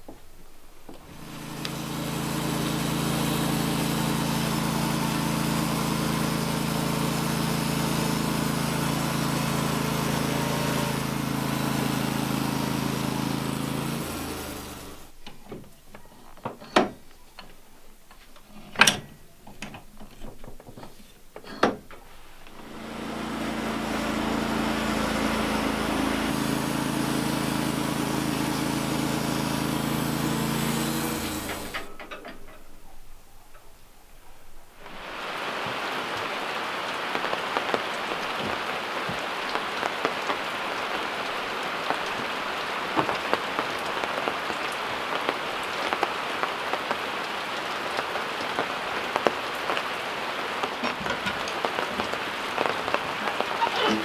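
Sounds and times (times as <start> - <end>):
sawmill engine running: 0.9 - 15.2, 22.4 - 32.2, 34.9 - 54.0.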